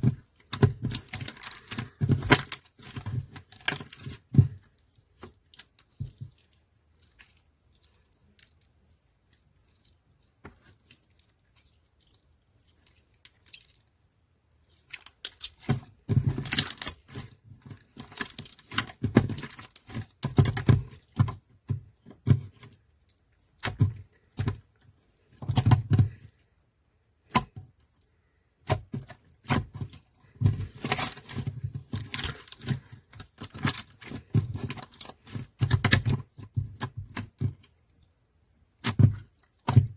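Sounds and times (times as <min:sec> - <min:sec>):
slime squished by hand: 0:00.1 - 0:26.6.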